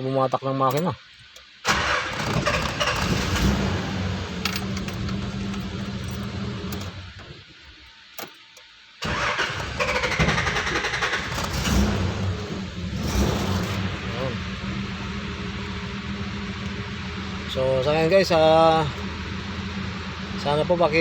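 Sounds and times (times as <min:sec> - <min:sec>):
petrol engine running: 0:09.0 - 0:21.0.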